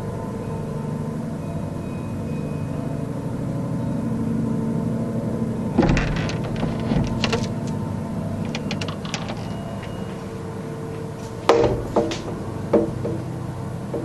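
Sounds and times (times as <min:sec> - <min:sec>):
low drone of held tones: 0:00.0 - 0:14.0
sharp knocks or clicks: 0:05.8 - 0:07.8, 0:08.4 - 0:09.6.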